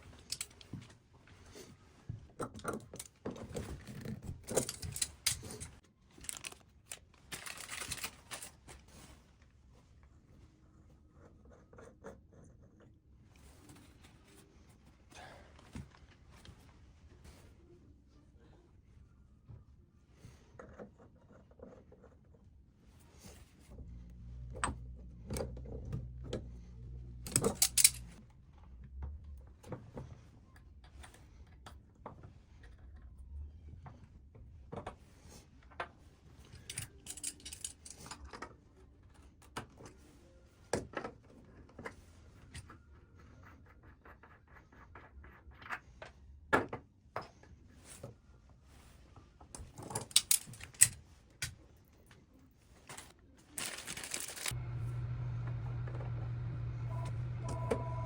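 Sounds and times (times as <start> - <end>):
small hard objects clicking and clinking: 27.3 - 28.0, 53.6 - 54.6
low hum: 53.7 - 58.0.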